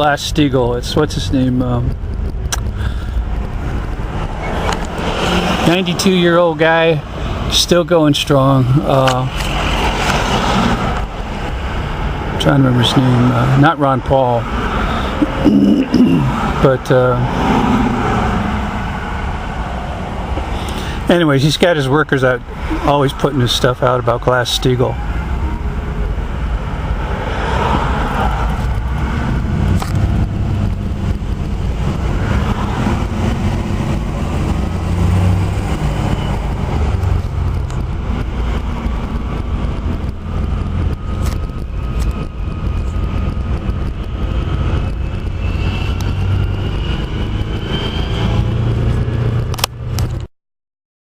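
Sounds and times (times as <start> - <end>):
car engine and road noise: 0.0 - 50.3
faint rising whine: 22.3 - 49.5.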